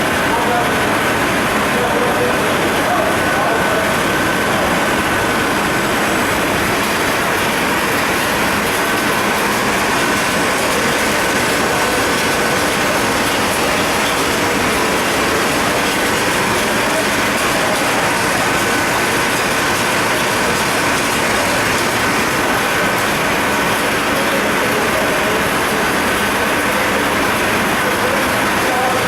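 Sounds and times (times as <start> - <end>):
machine running steadily: 0.0 - 29.0.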